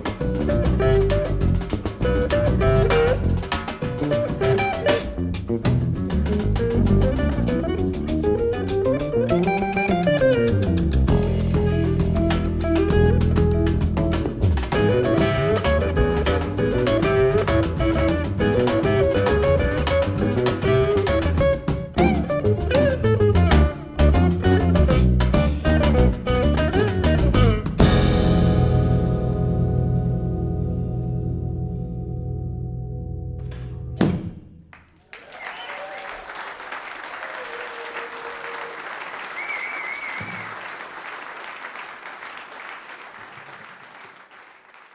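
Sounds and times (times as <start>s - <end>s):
jazz band playing: 0.0s - 34.5s
guitar lines: 0.0s - 34.6s
audience applauding: 34.7s - 44.9s
wavering whistle: 39.4s - 40.5s.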